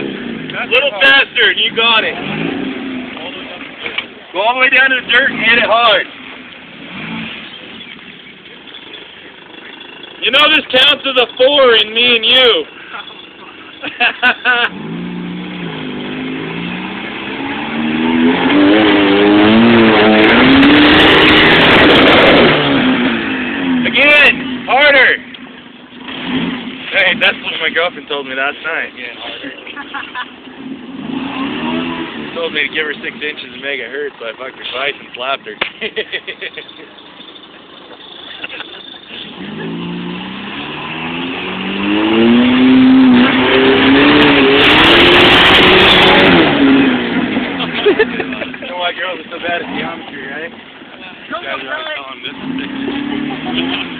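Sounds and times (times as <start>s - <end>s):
engine revving hard: 0.0s - 3.6s, 4.4s - 7.9s, 14.4s - 25.2s, 26.0s - 28.8s, 30.5s - 33.9s, 38.8s - 50.5s, 51.3s - 53.9s.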